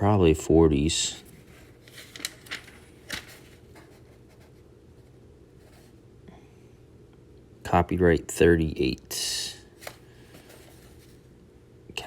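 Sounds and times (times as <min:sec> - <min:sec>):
faint steady hum: 0:00.0 - 0:12.0
paper pages rustling: 0:01.2 - 0:06.0, 0:09.8 - 0:11.3.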